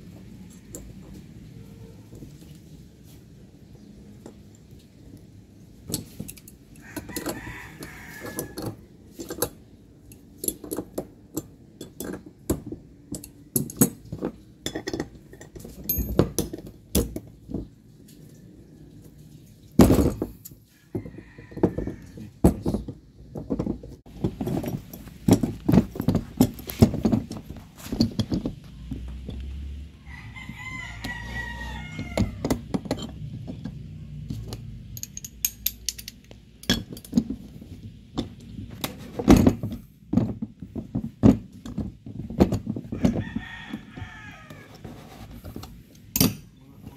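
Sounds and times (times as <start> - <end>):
hand tools clicking and knocking: 5.8 - 17.8, 19.7 - 29.7, 31.9 - 46.9
rooster crowing: 6.8 - 8.8, 20.7 - 22.3, 30.0 - 32.6, 43.0 - 44.9.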